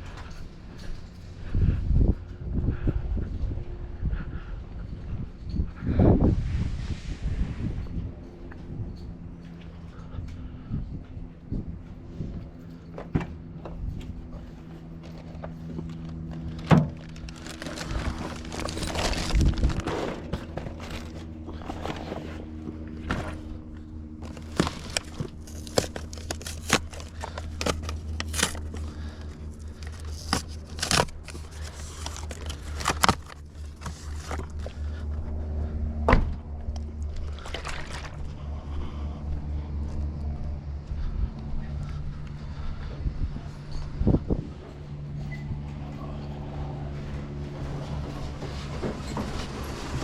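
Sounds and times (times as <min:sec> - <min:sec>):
steady low hum: 0:00.0 - 0:50.0
objects knocking and scraping: 0:47.5 - 0:50.0.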